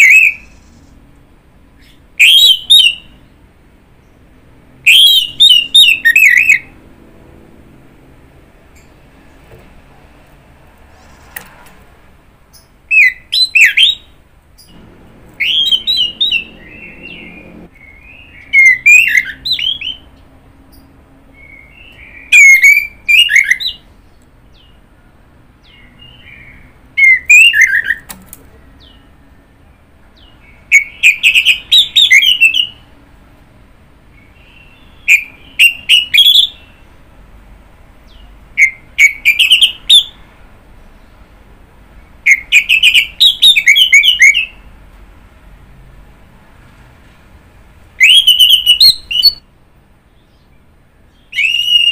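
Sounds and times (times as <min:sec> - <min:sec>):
thrush singing whistled notes: 0:00.0 - 0:00.9, 0:01.8 - 0:03.2, 0:04.8 - 0:06.7, 0:12.5 - 0:20.1, 0:21.3 - 0:23.8, 0:25.6 - 0:28.1, 0:30.2 - 0:32.9, 0:34.2 - 0:36.8, 0:38.1 - 0:40.2, 0:42.2 - 0:44.7, 0:48.0 - 0:49.5, 0:51.1 - 0:51.9.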